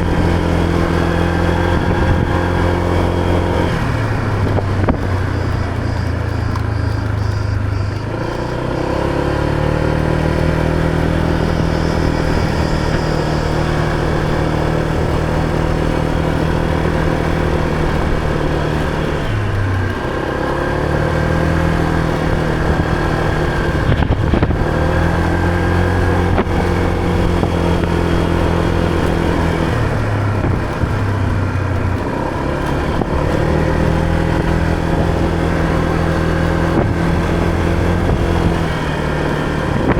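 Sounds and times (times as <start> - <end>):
motor scooter engine running: 0.0 - 39.9.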